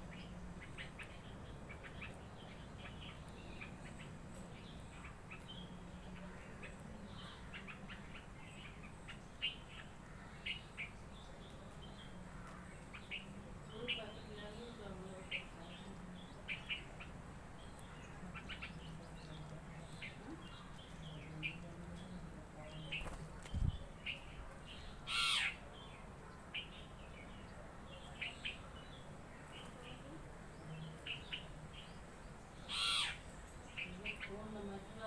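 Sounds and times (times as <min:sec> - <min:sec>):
birds chirping: 0:00.0 - 0:35.0
harsh bird call: 0:25.0 - 0:25.6, 0:32.6 - 0:33.3.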